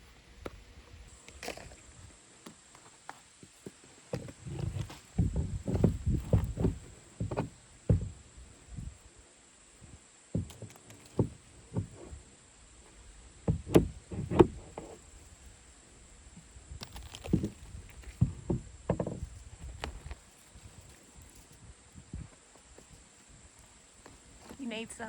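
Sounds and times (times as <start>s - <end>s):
roof shingles knocking and thudding: 4.2s - 8.9s, 9.8s - 12.2s, 13.4s - 15.3s, 16.8s - 20.3s.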